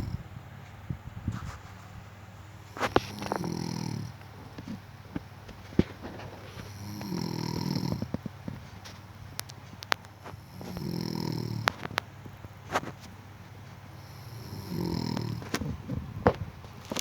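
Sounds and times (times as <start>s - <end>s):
person snoring: 0.0s - 0.2s, 2.8s - 4.2s, 6.5s - 8.2s, 10.3s - 11.9s, 14.0s - 15.9s.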